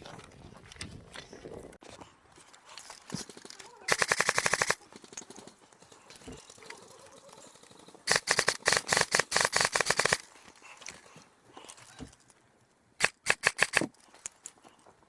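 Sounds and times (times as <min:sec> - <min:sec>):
airsoft gun firing full auto: 0:03.9 - 0:04.8, 0:08.1 - 0:10.2.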